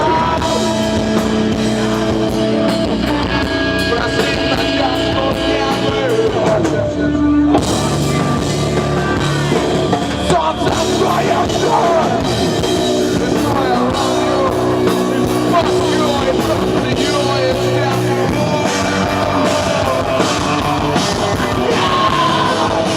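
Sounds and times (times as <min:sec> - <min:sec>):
amplified instruments: 0:00.0 - 0:22.9
drum kit: 0:00.0 - 0:22.9
person singing: 0:00.0 - 0:22.9.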